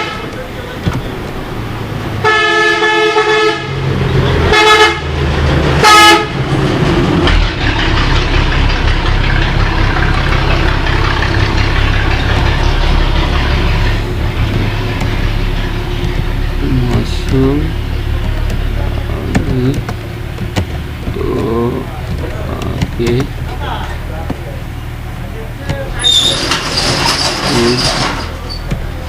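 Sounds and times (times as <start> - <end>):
vehicle horn blasts: 0.0 - 0.4, 2.2 - 3.8, 4.5 - 5.1, 5.8 - 6.4
low vehicle rumble: 0.0 - 29.0.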